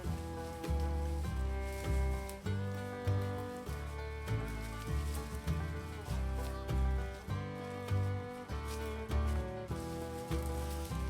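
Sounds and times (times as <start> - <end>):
bass line: 0.0 - 11.0
plucked-string tune: 0.0 - 11.0.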